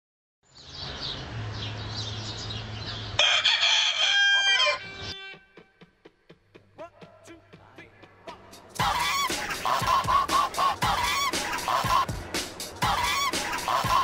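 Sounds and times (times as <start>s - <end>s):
rooster crowing: 3.2s - 5.5s.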